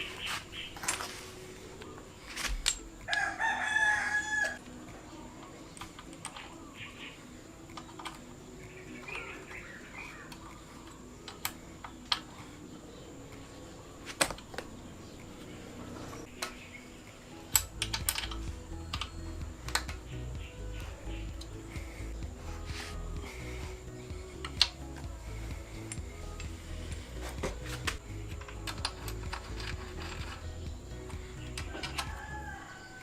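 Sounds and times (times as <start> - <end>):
rooster crowing: 3.1 - 4.6, 31.6 - 33.0
sharp clicks and taps: 17.5 - 21.5.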